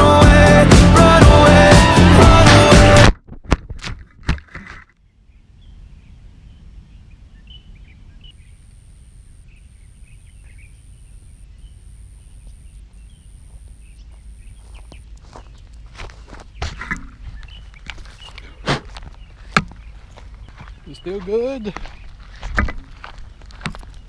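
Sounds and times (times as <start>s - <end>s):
faint chirps: 5.6s - 16.4s
thin high whine: 8.4s - 14.8s.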